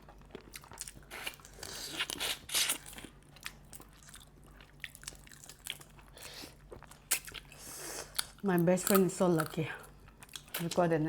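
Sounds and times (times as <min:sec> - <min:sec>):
close-up chewing: 0:00.0 - 0:10.8
crab shell crunching: 0:06.9 - 0:10.7.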